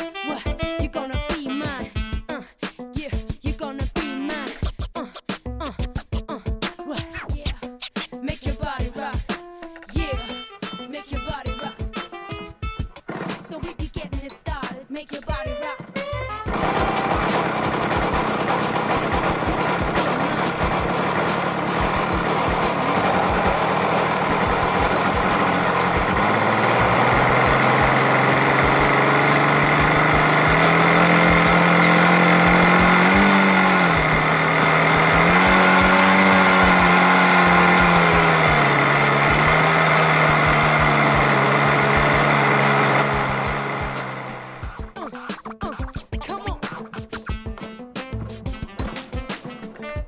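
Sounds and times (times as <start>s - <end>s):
model airplane engine running: 16.5s - 44.8s.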